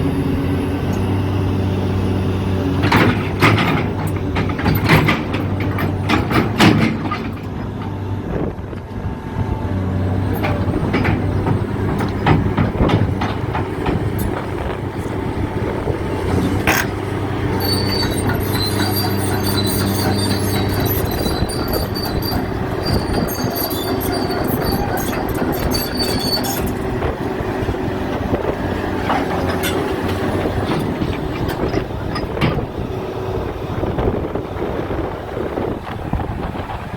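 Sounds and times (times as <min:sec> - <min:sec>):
excavator diesel engine humming: 0:00.0 - 0:36.9
steel tracks squealing: 0:02.9 - 0:08.0, 0:10.2 - 0:32.7
metallic clanks: 0:16.2 - 0:27.3, 0:29.0 - 0:32.6.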